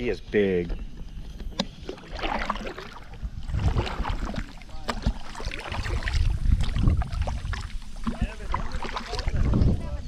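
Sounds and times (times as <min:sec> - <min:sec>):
paddle splashing water: 0:01.1 - 0:10.0
wind rumble on microphone: 0:03.0 - 0:10.0.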